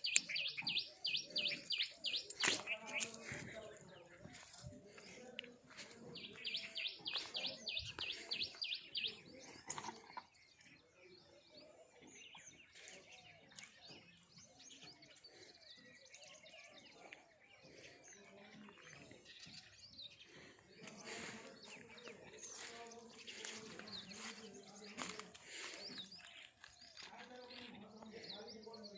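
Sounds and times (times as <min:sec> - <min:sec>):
bird chirping high: 0:00.0 - 0:03.1.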